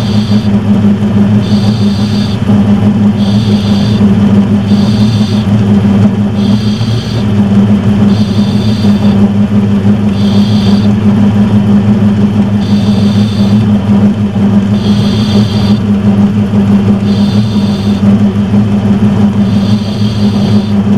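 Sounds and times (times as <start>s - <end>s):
short high-pitched squeal: 0.0s - 0.5s, 1.4s - 2.4s, 3.2s - 4.0s, 4.6s - 5.5s, 6.4s - 7.2s, 8.0s - 9.2s, 10.1s - 10.9s, 12.6s - 13.6s, 14.8s - 15.8s, 17.0s - 18.0s, 19.4s - 20.8s
metal lathe motor hum: 0.0s - 20.9s.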